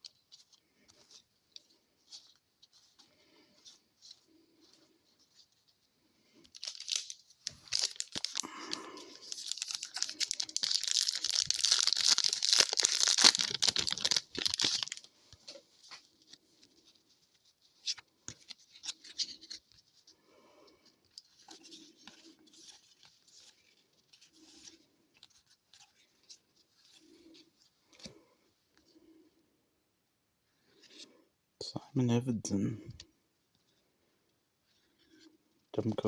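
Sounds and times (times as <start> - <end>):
cards ticking and rustling: 6.4 - 16.8
wrapper being torn open: 6.5 - 15.1.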